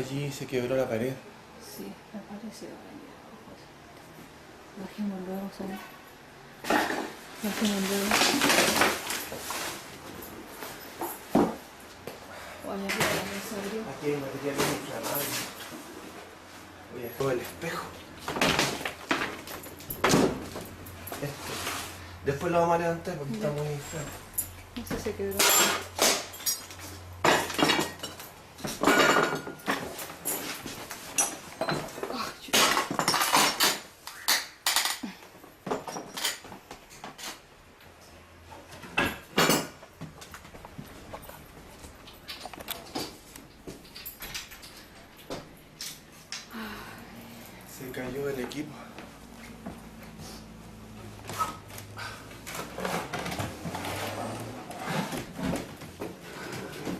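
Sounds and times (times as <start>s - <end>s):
household objects knocking and clattering: 11.0s - 11.7s
broken glass clattering and clinking: 25.3s - 30.6s, 31.2s - 33.8s.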